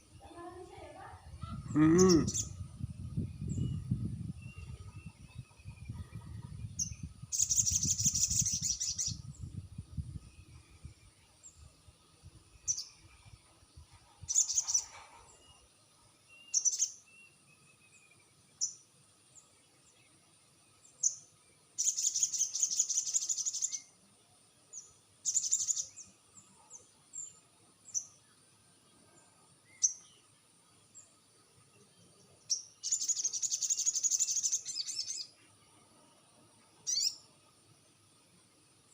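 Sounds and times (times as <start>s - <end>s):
short high bird chirps: 36.9s - 37.2s.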